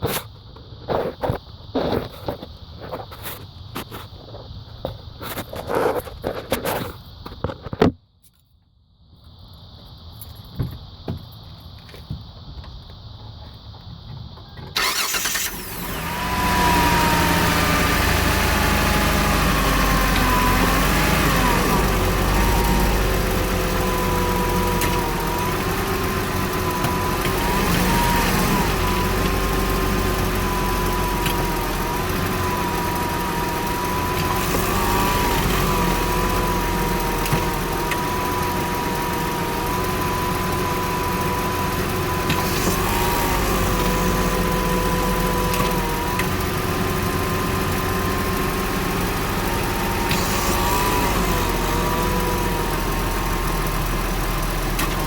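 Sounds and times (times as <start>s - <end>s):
car engine starting and idling: 14.7s - 55.0s.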